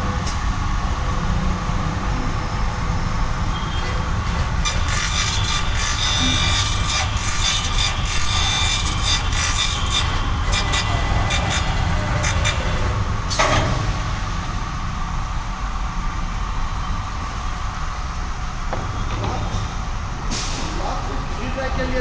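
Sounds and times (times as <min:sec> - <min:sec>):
machine cutters rasping: 0:03.8 - 0:13.6.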